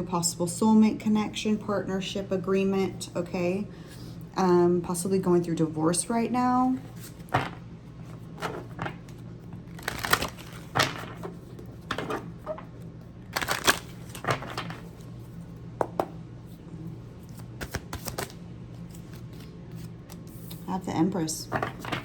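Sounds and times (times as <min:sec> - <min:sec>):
low steady hum: 0:00.0 - 0:22.0
cards shuffling: 0:08.3 - 0:12.7, 0:13.3 - 0:15.1, 0:17.2 - 0:20.7.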